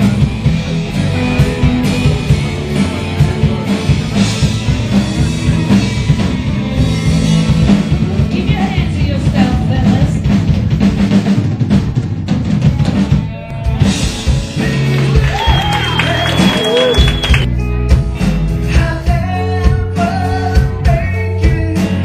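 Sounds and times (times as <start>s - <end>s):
drum kit: 0.0s - 22.0s
live rock band playing: 0.0s - 22.0s
person singing: 13.5s - 17.0s, 18.6s - 22.0s.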